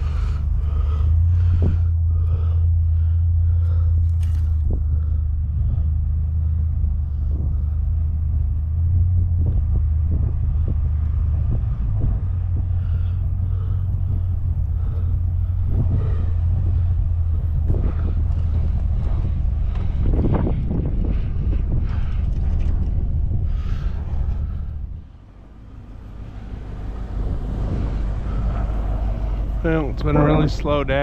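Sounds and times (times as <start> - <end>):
low engine-like rumble: 0.0 - 31.0.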